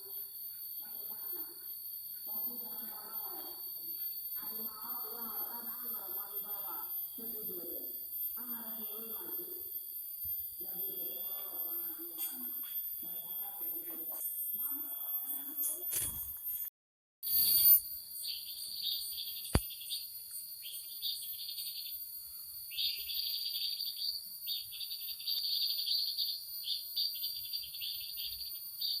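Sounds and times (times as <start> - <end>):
crickets chirping: 0.0 - 16.7, 17.3 - 29.0
high insect hiss: 0.0 - 16.7, 17.3 - 29.0.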